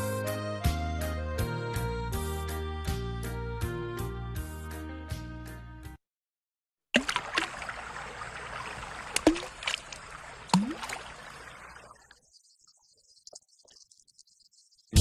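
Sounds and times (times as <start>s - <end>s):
water drops plopping: 7.0s - 12.2s
water splashing and trickling: 7.0s - 14.8s.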